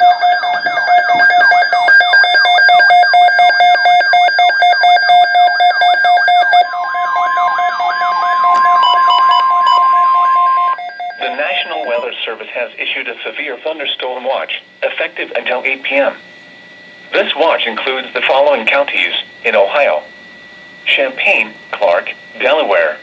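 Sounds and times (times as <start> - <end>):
pulsing electronic beeps: 0.0 - 4.3, 5.8 - 12.0
steady warning tone: 0.0 - 23.0
fast electronic warble: 6.4 - 12.0.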